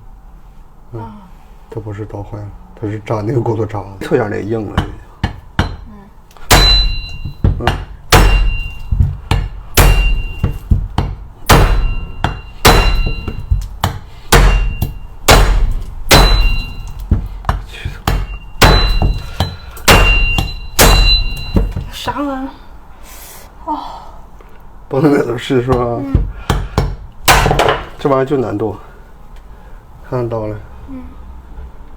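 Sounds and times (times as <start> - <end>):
cleaver chopping with metallic ring: 6.5 - 17.3, 18.0 - 21.8.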